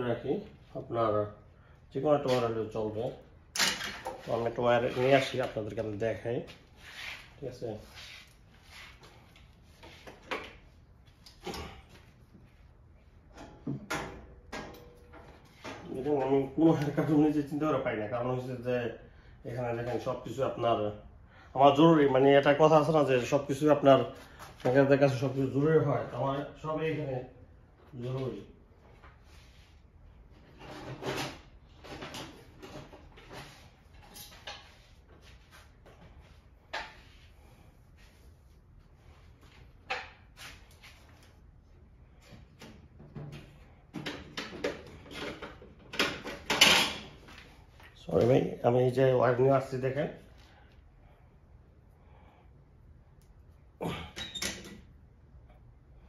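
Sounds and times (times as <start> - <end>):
objects knocking and clattering: 42.6 - 47.2.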